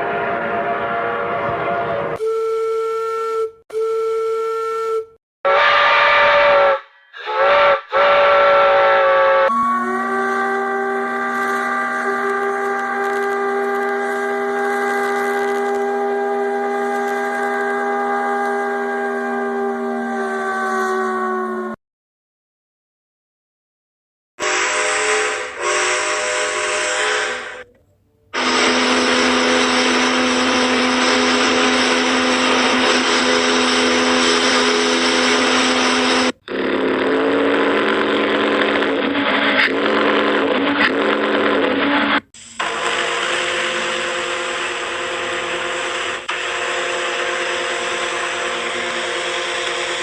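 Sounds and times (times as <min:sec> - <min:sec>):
ship's whistle blasts: 0:02.2 - 0:21.4, 0:24.4 - 0:27.7, 0:28.4 - 0:36.7.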